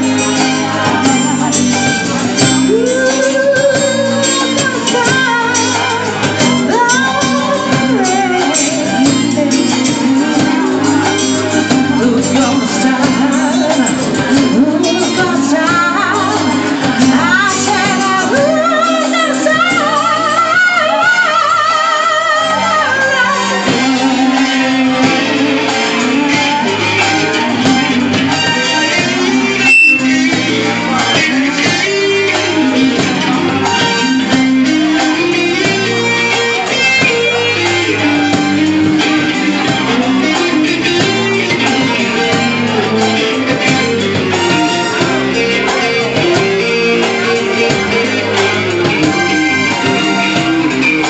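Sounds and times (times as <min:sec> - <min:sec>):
electric guitar: 0:00.0 - 0:51.0
live band playing pop-rock ballad: 0:00.0 - 0:51.0
held vibrato note: 0:29.2 - 0:31.0.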